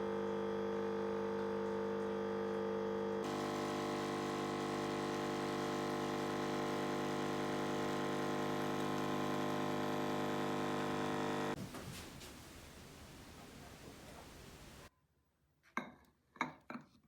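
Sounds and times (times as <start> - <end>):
machine hum: 3.2 - 11.6.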